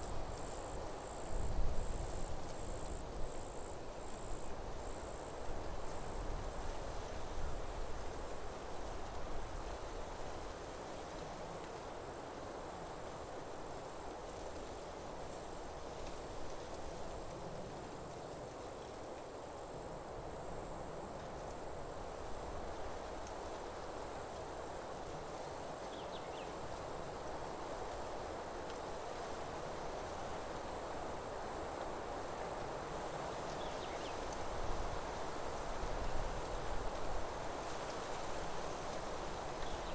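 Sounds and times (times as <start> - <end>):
soft rushing hiss: 0.0 - 39.9
insects trilling: 25.4 - 35.8.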